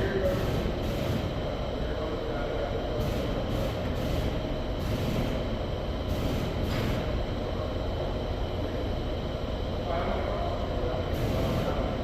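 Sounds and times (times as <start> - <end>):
low mechanical rumble: 0.0 - 12.0.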